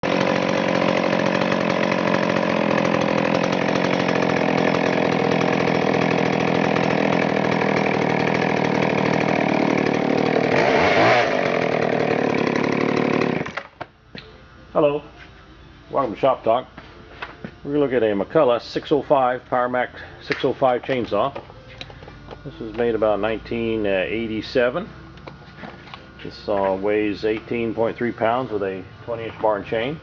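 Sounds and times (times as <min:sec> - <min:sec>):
chainsaw engine running: 0:00.0 - 0:13.8, 0:17.5 - 0:30.0.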